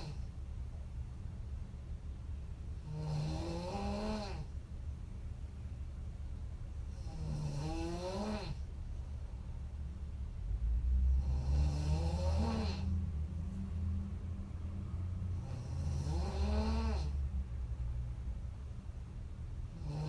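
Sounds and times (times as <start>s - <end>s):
woman snoring heavily: 0.0s - 0.2s, 2.8s - 4.5s, 6.9s - 8.6s, 11.1s - 13.0s, 15.4s - 17.2s, 19.8s - 20.0s.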